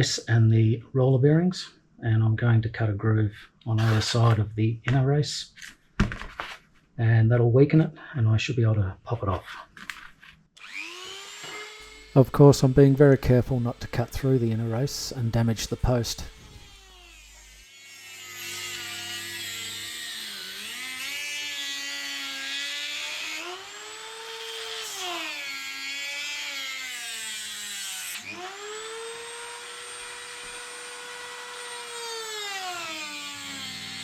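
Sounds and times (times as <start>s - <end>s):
rotary tool grinding metal: 3.8s - 4.4s, 10.6s - 34.0s.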